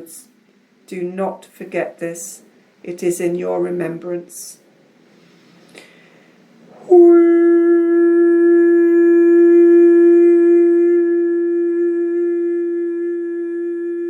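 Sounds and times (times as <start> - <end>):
long held breathy note: 6.8 - 14.0.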